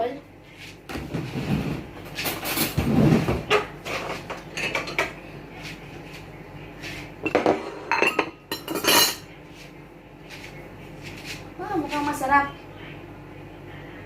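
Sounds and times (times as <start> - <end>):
dishes and cutlery clinking: 3.5 - 5.2, 7.2 - 9.3.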